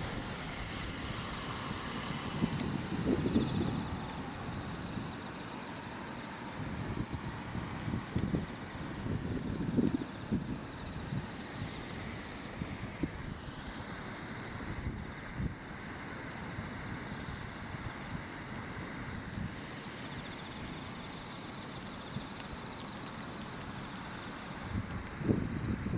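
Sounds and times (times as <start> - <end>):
wind buffeting microphone: 0.0 - 5.5, 6.6 - 13.4, 23.7 - 25.9.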